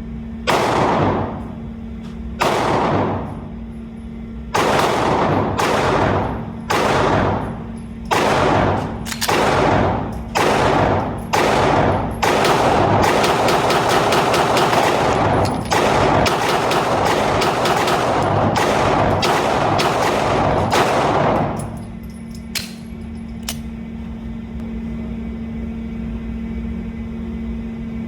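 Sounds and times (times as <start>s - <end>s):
pistol shots: 0.5s - 1.6s, 2.4s - 3.4s, 4.6s - 21.8s.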